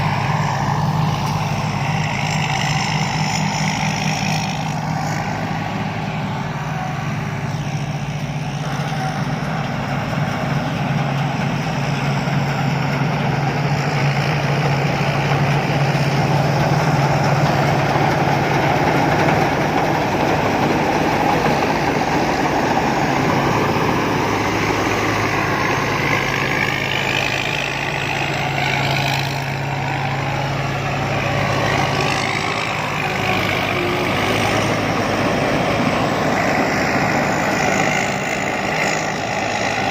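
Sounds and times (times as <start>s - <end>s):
combine harvester engine hum: 0.0s - 39.9s
rush of machinery noise: 0.0s - 39.9s.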